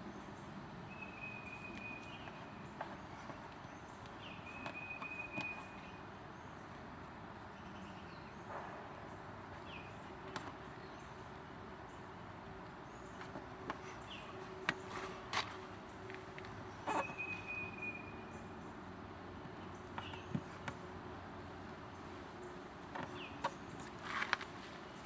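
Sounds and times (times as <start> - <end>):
faint outdoor hiss: 0.0 - 25.0
bird chirps: 0.3 - 6.6, 16.8 - 18.8, 19.6 - 20.5.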